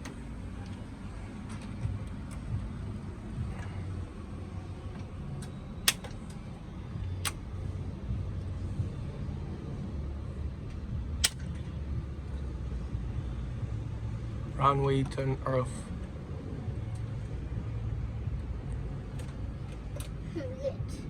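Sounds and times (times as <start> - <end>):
low rumble of traffic: 0.0 - 21.0
sharp clicks: 11.2 - 11.4.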